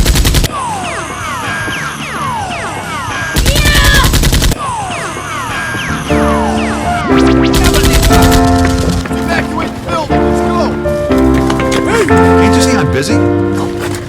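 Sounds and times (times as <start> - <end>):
automatic gunfire: 0.0 - 0.5, 3.4 - 4.6
music chords: 5.9 - 13.6.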